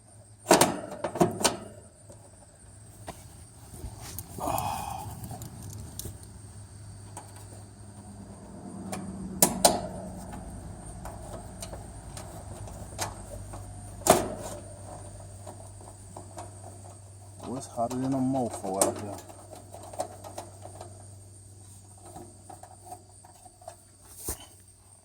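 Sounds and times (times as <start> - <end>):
steady low hum: 1.5 - 25.0
metallic clicks of screws and tools: 5.0 - 6.3.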